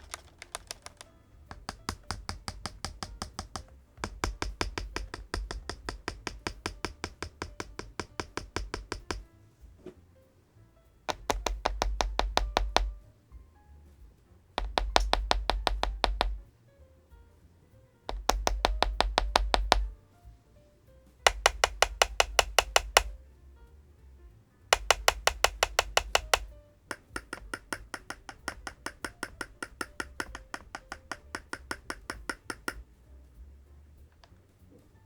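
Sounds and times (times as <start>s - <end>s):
keyboard keystrokes clicking: 0.0s - 9.3s, 11.1s - 13.0s, 14.6s - 16.4s, 18.1s - 19.9s, 21.3s - 23.2s, 24.8s - 32.8s
quiet background music: 0.0s - 35.0s.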